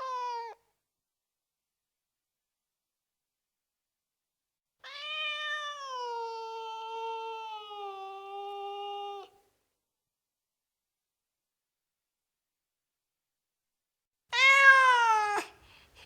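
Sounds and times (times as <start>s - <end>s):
cat meowing long: 0.0s - 0.6s, 4.8s - 9.4s, 14.3s - 15.6s.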